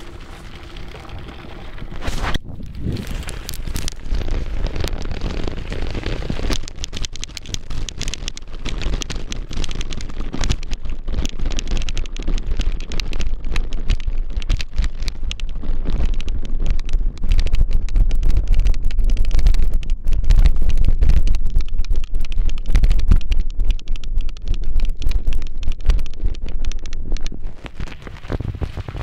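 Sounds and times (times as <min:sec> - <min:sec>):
wind buffeting microphone: 0:00.0 - 0:07.6
bike rattling on dirt trail: 0:00.0 - 0:29.0.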